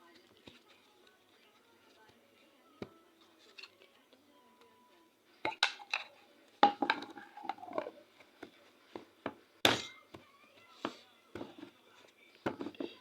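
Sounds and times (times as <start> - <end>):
hard objects knocking and clinking: 5.5 - 8.0.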